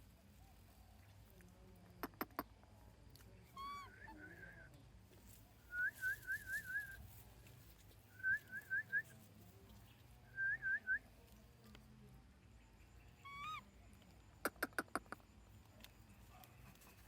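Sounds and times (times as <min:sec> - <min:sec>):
animal squeaky chirps: 0:03.5 - 0:04.4, 0:13.2 - 0:13.7.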